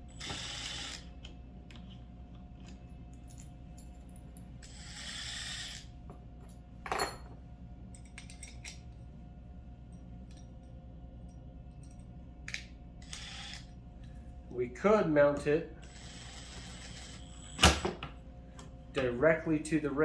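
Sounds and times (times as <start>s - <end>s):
metal hardware clinking: 6.4s - 7.4s.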